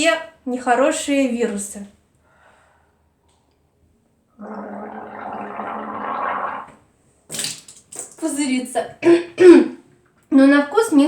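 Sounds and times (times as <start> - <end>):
person gargling: 4.4 - 6.8.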